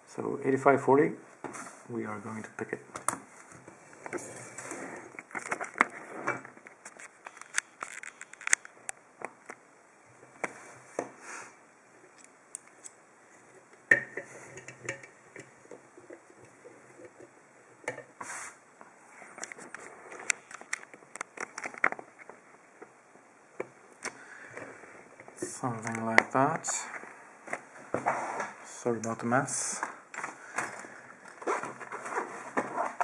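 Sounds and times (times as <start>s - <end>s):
rustling: 1.3s - 9.6s, 29.7s - 33.0s
padlock and tools clicking and knocking: 5.2s - 9.6s.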